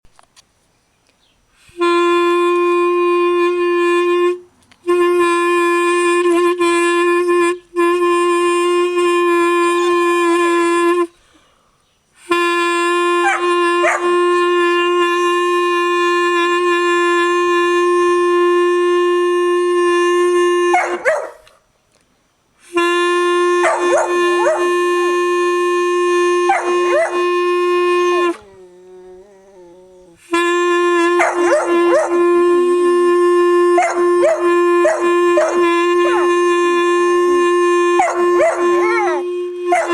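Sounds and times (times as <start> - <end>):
clarinet long held notes: 1.6 - 11.6, 12.2 - 21.6, 22.6 - 39.9
puppy yipping barking and howling: 20.8 - 21.5, 38.0 - 39.9.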